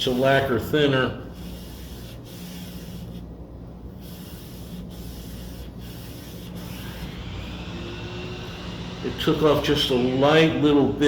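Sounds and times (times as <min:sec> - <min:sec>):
cloth rubbing a frame: 0:01.3 - 0:03.3, 0:03.9 - 0:07.2.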